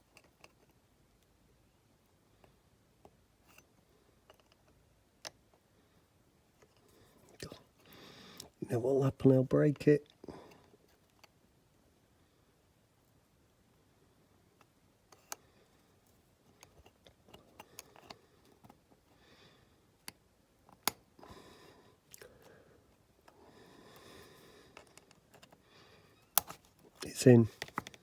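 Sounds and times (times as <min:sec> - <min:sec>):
small plastic parts clicking: 0:26.3 - 0:28.0.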